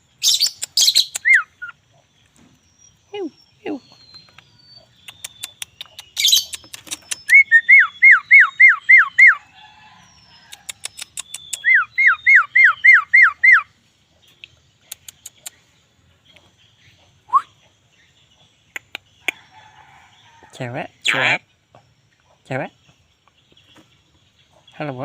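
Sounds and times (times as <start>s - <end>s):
bird whistling slurred notes: 0.2s - 1.7s, 5.1s - 9.4s, 10.8s - 13.7s, 17.3s - 17.6s
sharp clicks: 4.0s - 7.4s, 10.6s - 11.7s, 14.4s - 15.6s.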